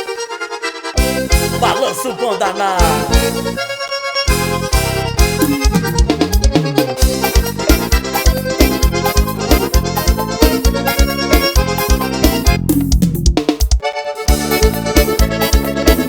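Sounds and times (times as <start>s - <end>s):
accordion melody: 0.0s - 16.0s
keyboard: 0.0s - 16.0s
bass: 1.0s - 1.8s, 2.8s - 16.0s
steady drum beat: 12.2s - 13.8s.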